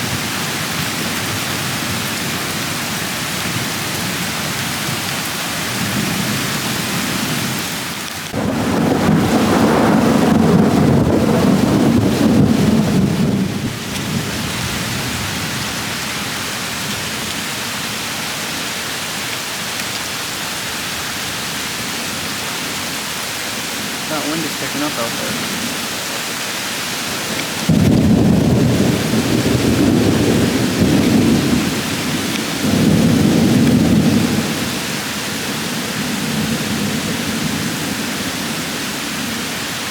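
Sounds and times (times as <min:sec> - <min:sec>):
heavy rain falling: 0:00.0 - 0:39.9
thunder rumbling: 0:08.3 - 0:15.9, 0:23.7 - 0:38.1.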